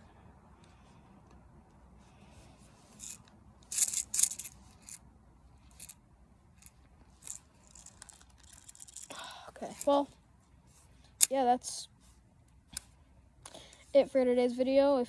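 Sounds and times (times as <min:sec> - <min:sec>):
scraping swishing handling sounds: 0:01.9 - 0:06.0, 0:06.6 - 0:13.0.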